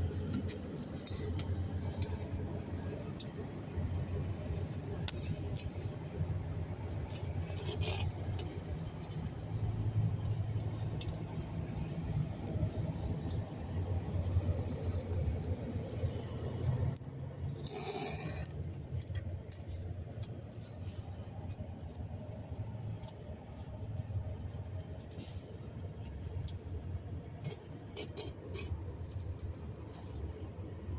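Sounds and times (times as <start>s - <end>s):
car engine rumbling unevenly: 0.0s - 30.9s.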